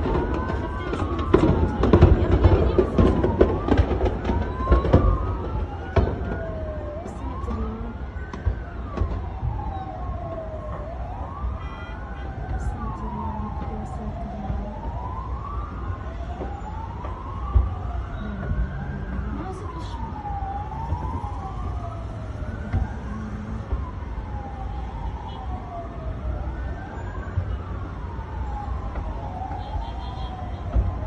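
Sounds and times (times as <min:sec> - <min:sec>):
sharp bangs and pops: 0:00.0 - 0:06.6, 0:08.2 - 0:11.0, 0:28.9 - 0:31.0
emergency siren wailing: 0:00.0 - 0:31.0.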